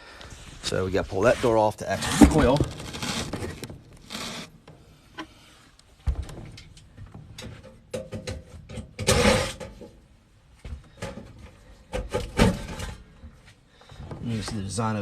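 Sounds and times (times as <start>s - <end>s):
sheet metal door scraping: 1.1s - 5.0s, 9.0s - 9.8s.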